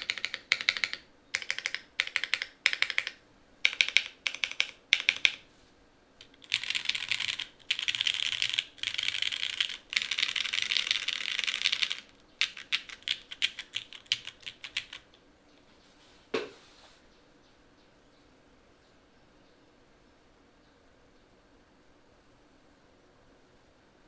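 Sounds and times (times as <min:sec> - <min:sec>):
mechanical keyboard typing: 0:00.0 - 0:05.5, 0:06.2 - 0:15.2.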